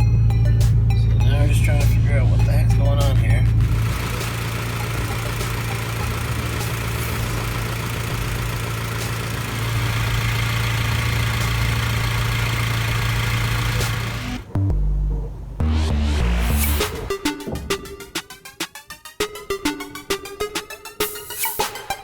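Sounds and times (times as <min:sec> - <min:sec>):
car engine idling: 0:00.0 - 0:17.1.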